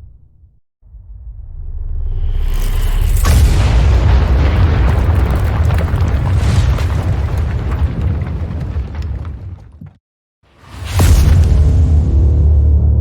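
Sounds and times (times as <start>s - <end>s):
cinematic boom with rumbling tail: 0.8s - 8.6s.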